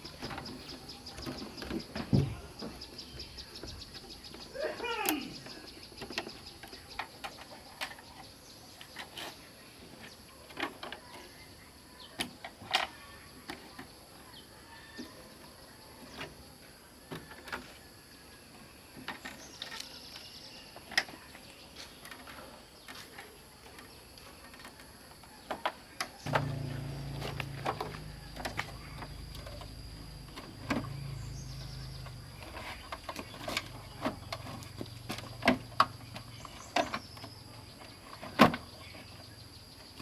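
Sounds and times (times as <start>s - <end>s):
faint high whine: 26.2s - 32.5s.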